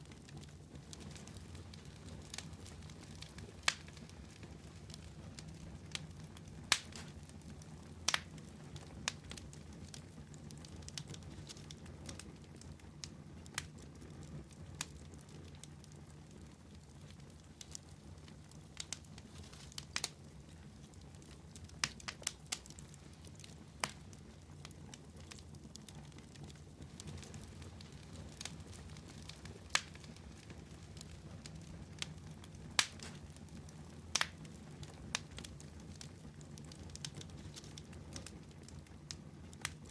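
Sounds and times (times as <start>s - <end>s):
campfire crackling and popping: 0.0s - 39.9s
low rumble of flames: 0.0s - 39.9s.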